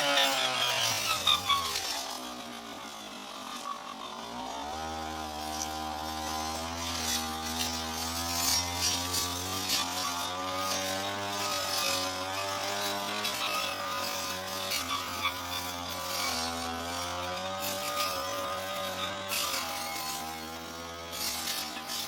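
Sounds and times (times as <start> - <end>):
brush cutter engine revving: 0.0 - 22.0.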